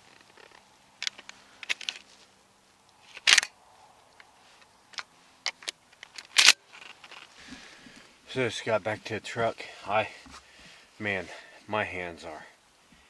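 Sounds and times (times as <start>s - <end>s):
short rustles and clicks: 0.0s - 8.2s.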